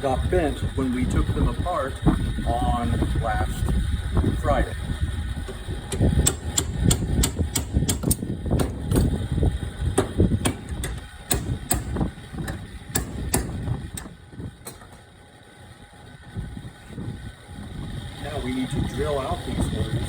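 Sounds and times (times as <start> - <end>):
hammer striking metal: 5.9 - 9.0, 10.0 - 15.0.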